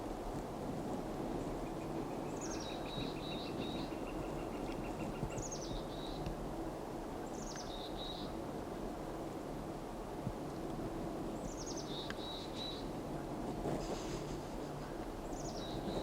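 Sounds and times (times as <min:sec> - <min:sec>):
steady low background noise: 0:00.0 - 0:16.0
songbird singing: 0:01.3 - 0:06.4, 0:07.2 - 0:08.4, 0:11.3 - 0:13.0, 0:14.6 - 0:16.0.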